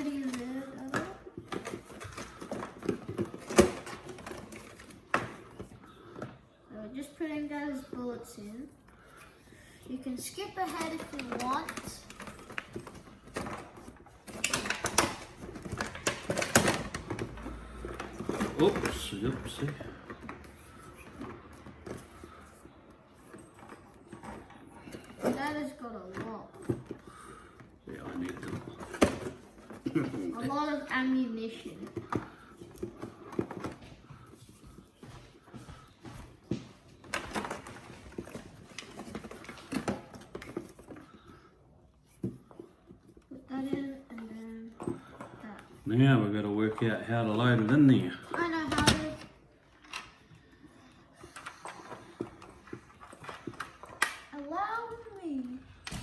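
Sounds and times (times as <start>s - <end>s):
plastic clicking and rattling: 10.6s - 22.3s, 51.2s - 54.5s.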